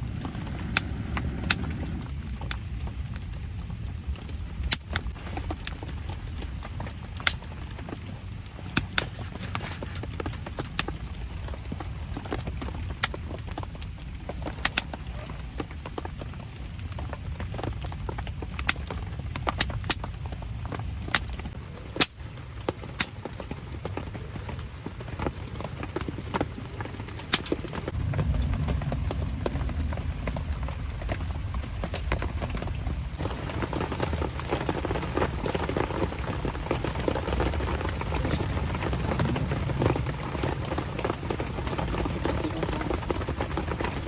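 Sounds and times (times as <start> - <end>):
low rushing noise: 0.0 - 7.1, 27.8 - 42.6
campfire crackling and popping: 0.0 - 44.0.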